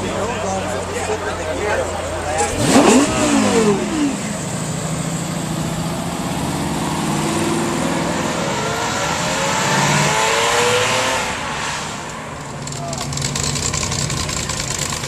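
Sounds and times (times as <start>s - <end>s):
car engine revving and accelerating: 2.2s - 12.4s.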